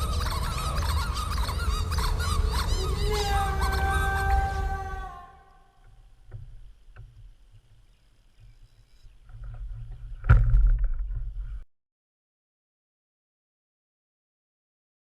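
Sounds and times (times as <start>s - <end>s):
low rumble on microphone: 8.4s - 11.7s.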